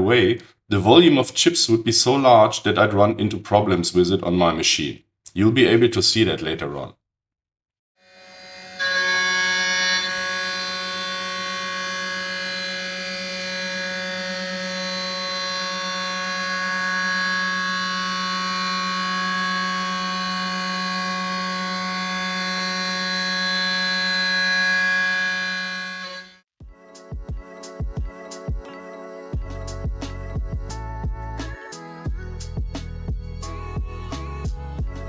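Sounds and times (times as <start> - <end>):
router spindle cutting metal whine: 8.1 - 26.4.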